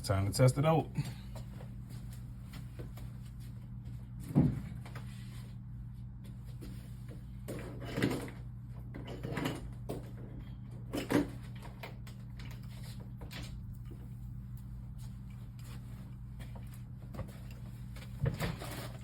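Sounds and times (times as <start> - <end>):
low electrical hum: 0.0 - 19.0
knocks and rustles of tools handled: 16.4 - 19.0.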